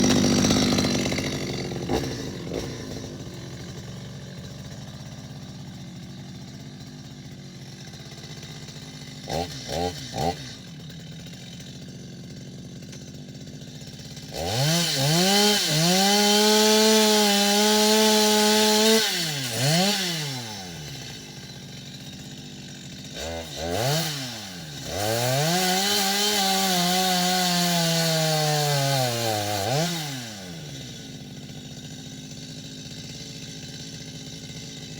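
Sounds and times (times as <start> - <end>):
chainsaw revving and cutting wood: 0.0 - 34.9.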